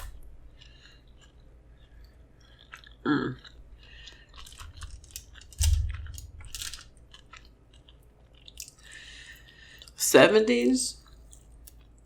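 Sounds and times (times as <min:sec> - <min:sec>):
chewing pizza: 0:00.0 - 0:10.1, 0:11.0 - 0:12.0.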